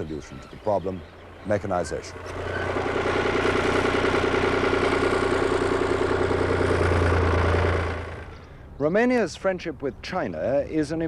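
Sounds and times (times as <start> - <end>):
machine engine running: 1.0 - 8.5.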